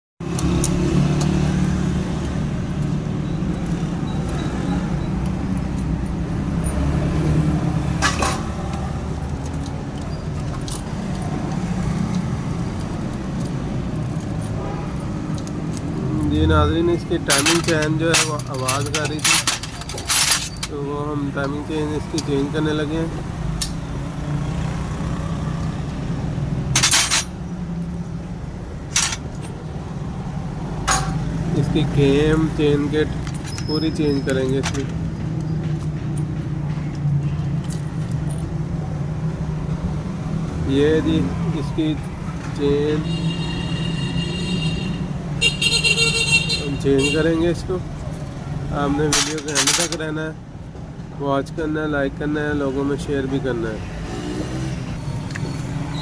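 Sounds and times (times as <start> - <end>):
metal tools clinking: 17.0 - 22.5, 26.7 - 27.5, 28.8 - 29.6, 30.8 - 31.4, 32.8 - 35.6, 49.0 - 50.1
small motorcycle engine jangling: 17.2 - 20.8.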